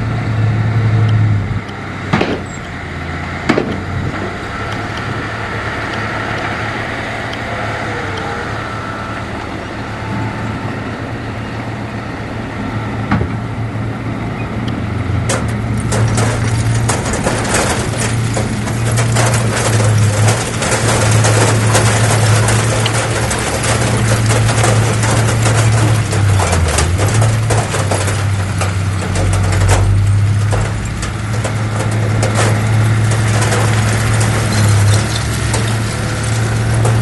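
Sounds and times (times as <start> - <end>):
diesel machinery engine running: 0.0 - 37.0
sharp knocks: 2.1 - 2.6, 3.4 - 4.4
metallic clatter: 15.3 - 37.0.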